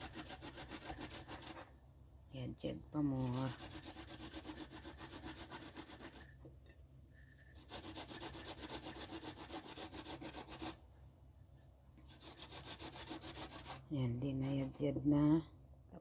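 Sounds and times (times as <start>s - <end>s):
ginger rasping on a grater: 0.0s - 1.7s, 3.0s - 6.4s, 7.1s - 10.8s, 12.0s - 14.8s.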